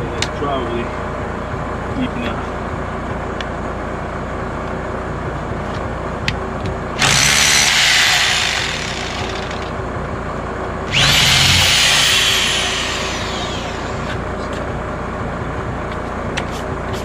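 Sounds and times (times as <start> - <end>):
hammer drill motor whine: 7.0 - 9.7, 10.9 - 14.2.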